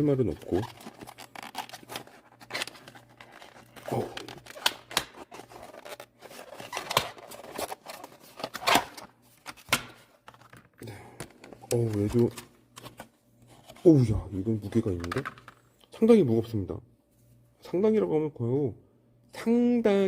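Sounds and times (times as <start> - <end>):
packaging rustling and tearing: 0.2 - 13.7.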